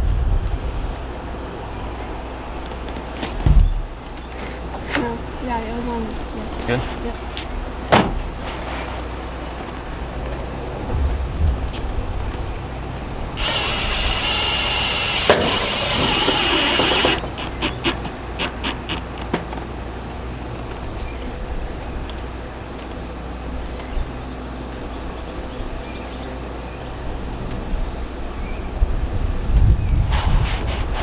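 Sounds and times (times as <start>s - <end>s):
power driver driving screw: 13.4s - 19.3s.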